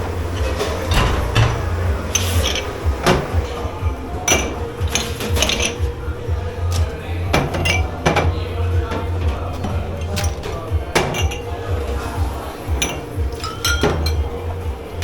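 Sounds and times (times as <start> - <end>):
dishes clattering and clinking: 0.0 - 14.7
low machine hum: 0.0 - 15.0.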